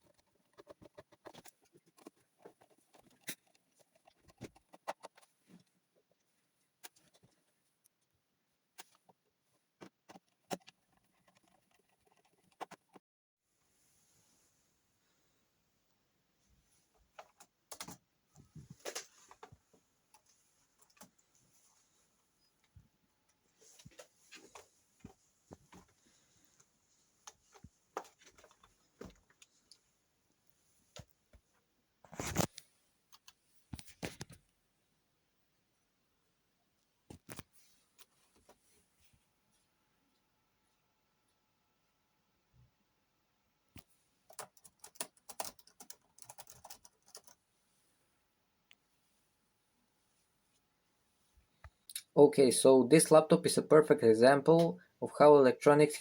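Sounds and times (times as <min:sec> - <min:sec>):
faint clicks and taps: 0:16.8 - 0:21.8, 0:22.4 - 0:34.6.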